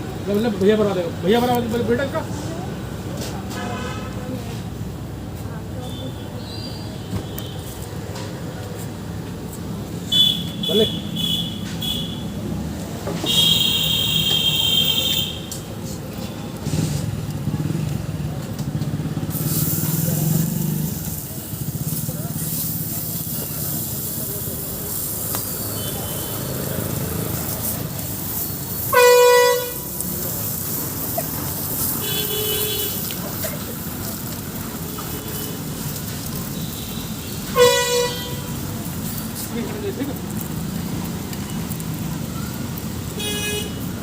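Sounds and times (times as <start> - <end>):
roadside traffic noise: 0.0 - 44.0
vehicle horn toot: 10.1 - 12.3, 13.2 - 15.5, 28.9 - 29.8, 32.0 - 33.0, 36.6 - 38.5, 43.2 - 43.8
vehicle engine running: 16.0 - 36.4
hiss: 19.1 - 44.0
shrill horn: 28.9 - 29.8.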